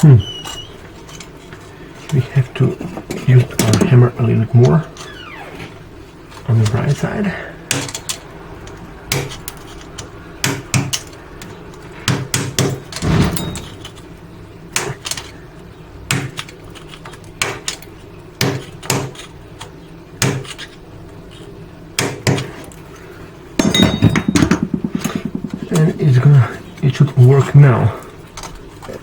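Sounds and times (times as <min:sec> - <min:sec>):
hammer tapping plastic: 0:23.6 - 0:26.0.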